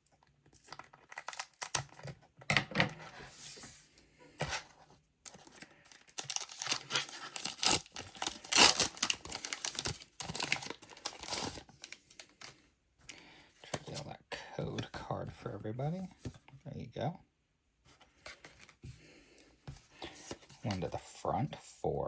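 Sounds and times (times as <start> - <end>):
foil wrapper tearing and crinkling: 0.9 - 2.0, 5.5 - 11.7.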